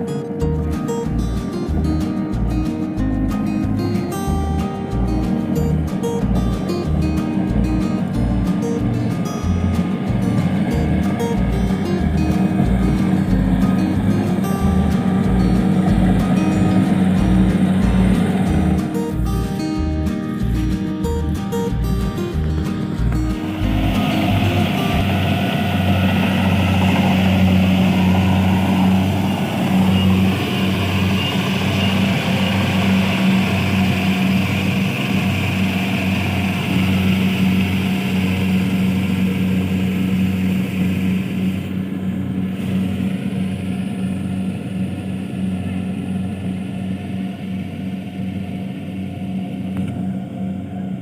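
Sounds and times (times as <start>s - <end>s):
engine running steadily: 0.0s - 51.0s
high hiss: 3.6s - 44.0s.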